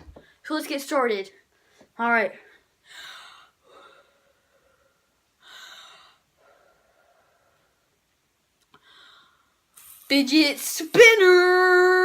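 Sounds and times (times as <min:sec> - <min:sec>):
soft breaths: 0:01.4 - 0:10.1.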